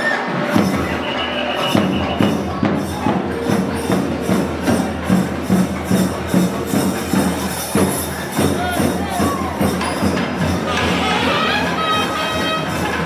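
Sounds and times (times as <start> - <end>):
drums beating a steady rhythm: 0.0 - 13.0
held melodic tone: 10.1 - 13.0.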